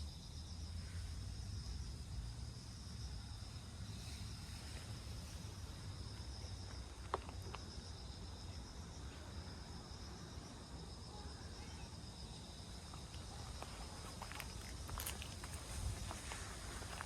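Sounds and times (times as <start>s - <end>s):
insects chirping: 0.0s - 17.0s.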